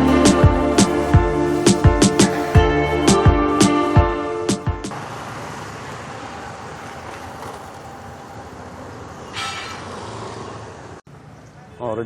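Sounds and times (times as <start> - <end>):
background music: 0.0 - 4.9
road traffic noise: 0.0 - 12.0.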